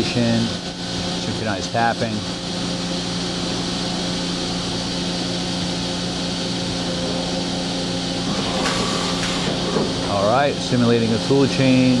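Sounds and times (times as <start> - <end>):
machining centre humming: 0.0 - 12.0.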